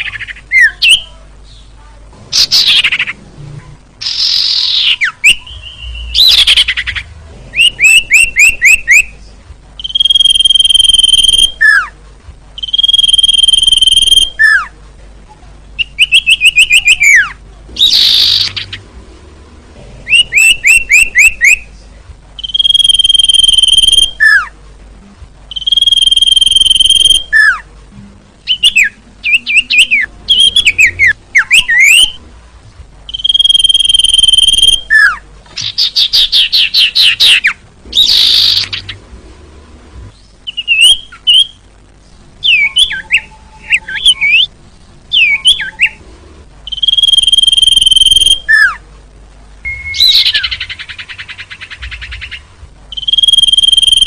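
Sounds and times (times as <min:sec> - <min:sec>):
bird chattering and trilling: 0:00.0 - 0:01.7, 0:02.3 - 0:03.2, 0:04.0 - 0:09.1, 0:09.8 - 0:11.9, 0:12.6 - 0:14.7, 0:15.8 - 0:18.9, 0:20.0 - 0:21.7, 0:22.4 - 0:24.5, 0:25.5 - 0:27.6, 0:28.4 - 0:32.2, 0:33.1 - 0:39.0, 0:45.1 - 0:46.0, 0:46.7 - 0:48.8, 0:49.7 - 0:54.0
bird whistling: 0:04.0 - 0:07.0, 0:07.6 - 0:09.1, 0:09.8 - 0:11.9, 0:12.6 - 0:14.7, 0:15.8 - 0:18.8, 0:20.1 - 0:21.6, 0:22.4 - 0:24.5, 0:25.5 - 0:27.6, 0:28.5 - 0:32.2, 0:33.1 - 0:39.0, 0:40.4 - 0:41.6, 0:42.4 - 0:44.5, 0:45.1 - 0:46.0, 0:46.7 - 0:48.8, 0:49.6 - 0:54.0.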